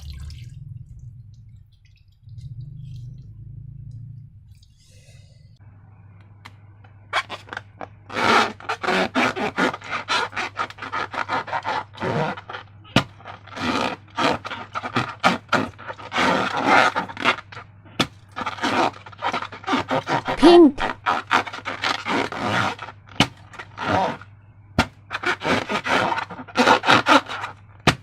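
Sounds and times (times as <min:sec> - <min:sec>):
hands rubbing slime and balloons: 0:18.3 - 0:24.2.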